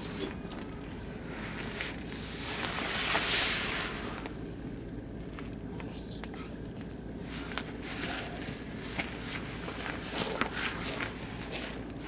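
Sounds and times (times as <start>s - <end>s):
wood fire crackling and popping: 0.0s - 12.0s
rushing hiss: 2.1s - 4.2s.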